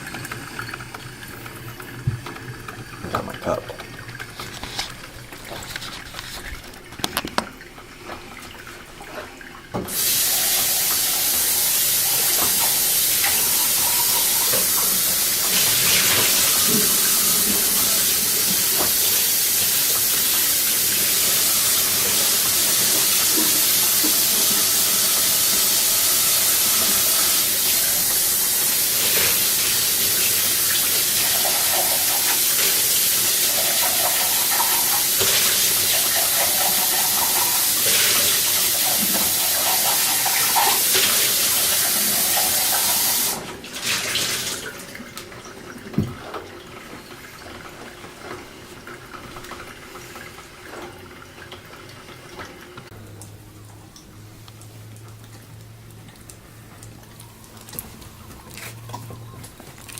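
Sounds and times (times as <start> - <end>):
loud steady hiss: 9.9 - 43.4.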